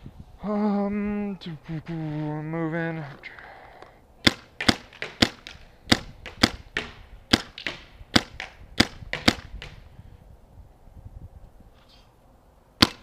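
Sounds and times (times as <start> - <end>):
paintball marker shots cracking: 4.2 - 9.8, 12.8 - 13.0.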